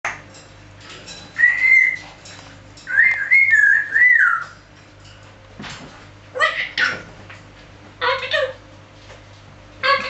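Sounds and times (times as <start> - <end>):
parrot whistling: 1.4 - 2.0, 2.9 - 4.6.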